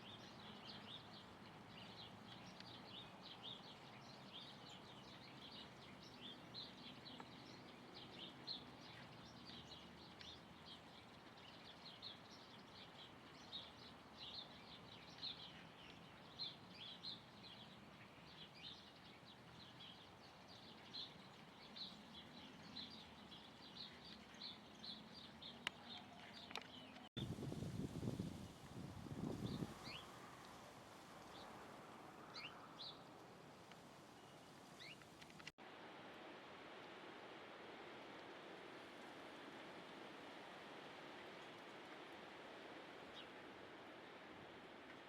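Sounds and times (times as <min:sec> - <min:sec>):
small birds chirping: 0:00.0 - 0:35.6.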